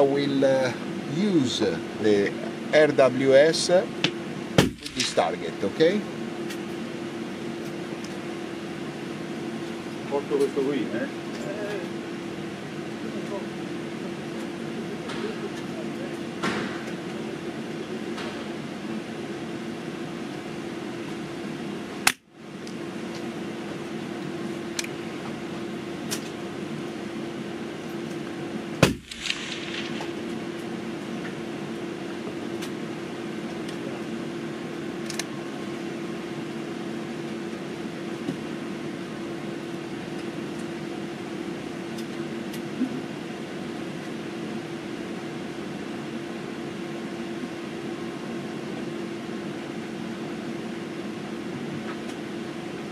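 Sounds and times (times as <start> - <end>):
steady low hum: 0.0 - 52.9
rifle shots: 28.8 - 31.2.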